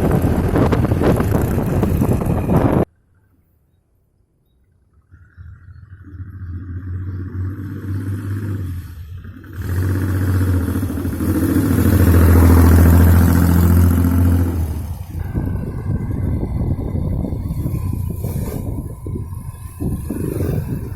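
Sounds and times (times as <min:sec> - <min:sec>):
motorcycle engine running: 0:00.0 - 0:02.9, 0:05.3 - 0:20.9.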